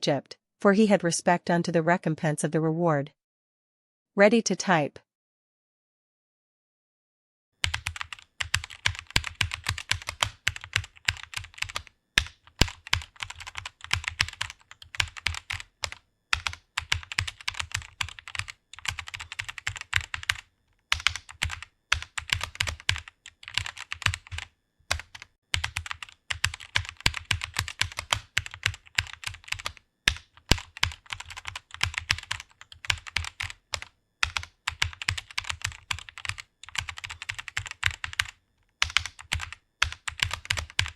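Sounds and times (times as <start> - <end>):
rapid keyboard typing: 7.6 - 40.9.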